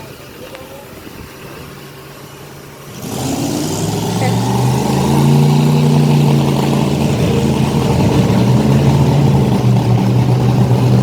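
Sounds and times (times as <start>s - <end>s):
vehicle engine idling: 0.0s - 11.0s.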